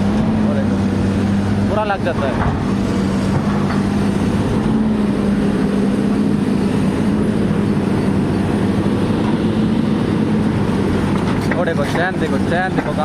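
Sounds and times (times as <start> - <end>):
diesel engine droning: 0.0 - 13.0.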